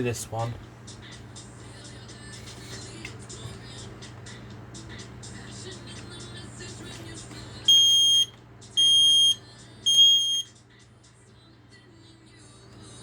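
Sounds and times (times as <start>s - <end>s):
smoke alarm beeps: 7.7s - 10.5s.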